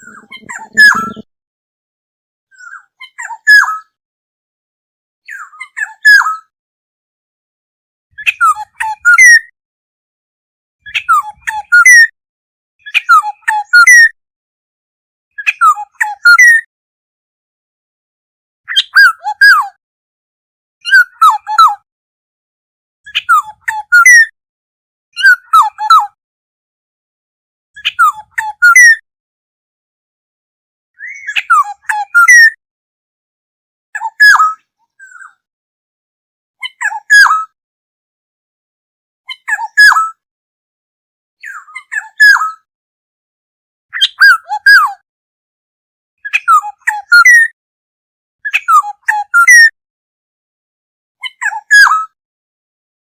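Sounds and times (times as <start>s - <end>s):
bird calling with fluty notes: 0.0s - 1.3s.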